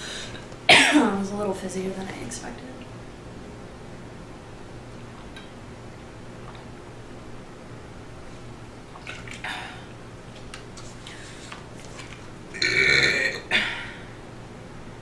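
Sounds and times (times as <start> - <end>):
woman burping loudly: 12.5 - 14.0.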